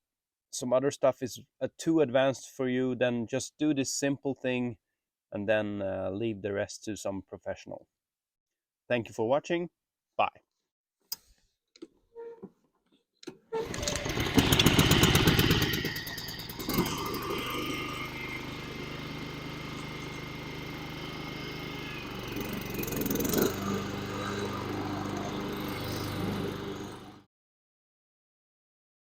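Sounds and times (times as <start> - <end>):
lawnmower engine running: 13.6 - 27.3.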